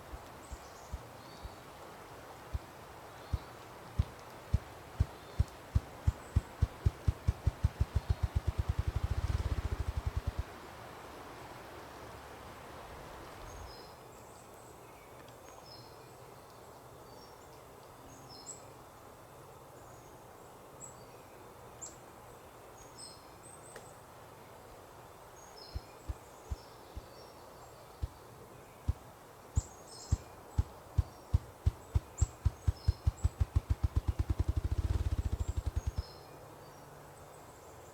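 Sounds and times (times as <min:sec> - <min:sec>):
small birds chirping: 0:00.0 - 0:10.4, 0:25.1 - 0:37.9
grouse drumming thumps: 0:03.3 - 0:10.4, 0:29.6 - 0:36.1.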